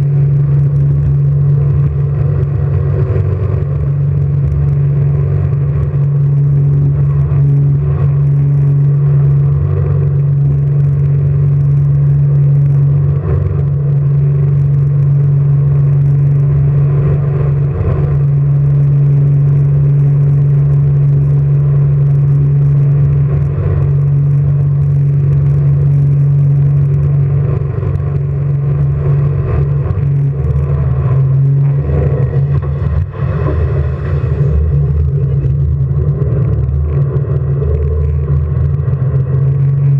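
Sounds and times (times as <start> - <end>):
jet boat engine running: 0.0 - 39.9
rushing noise: 26.2 - 39.9.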